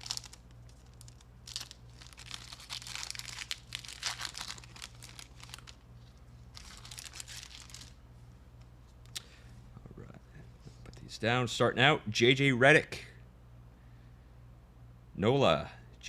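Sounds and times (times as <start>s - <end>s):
wrapper tearing and crinkling: 0.0s - 8.0s.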